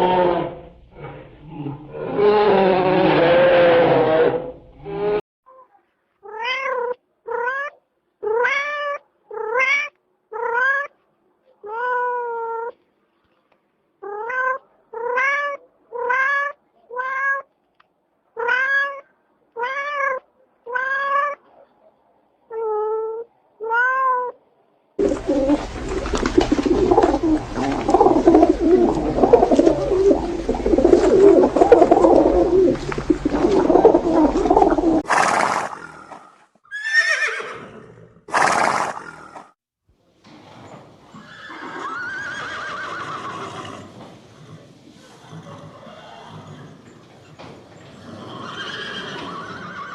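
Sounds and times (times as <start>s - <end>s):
cat meowing: 6.2s - 10.9s, 14.0s - 17.5s, 18.4s - 21.4s, 22.5s - 24.4s
rough continuous noise: 24.4s - 36.1s.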